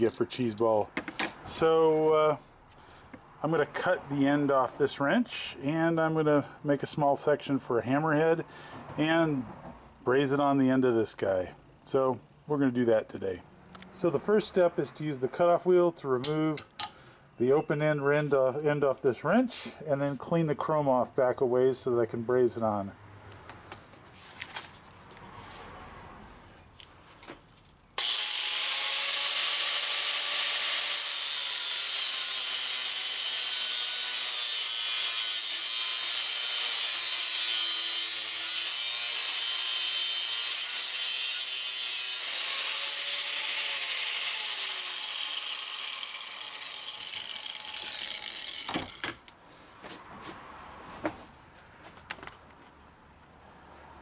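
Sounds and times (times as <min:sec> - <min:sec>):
tool and wrench clicking: 0:00.0 - 0:01.4
cutoff wheel grinding metal: 0:00.0 - 0:01.5, 0:28.0 - 0:49.3.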